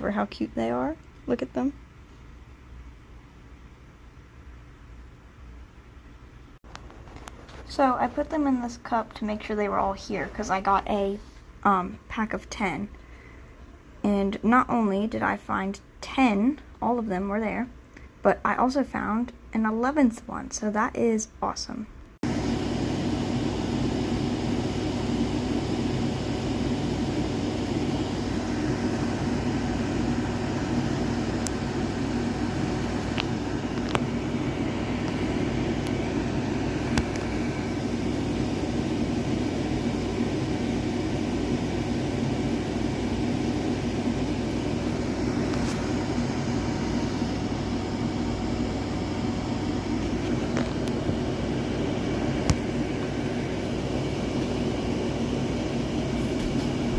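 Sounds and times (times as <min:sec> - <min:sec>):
low mechanical rumble and hum: 0:21.8 - 0:56.9.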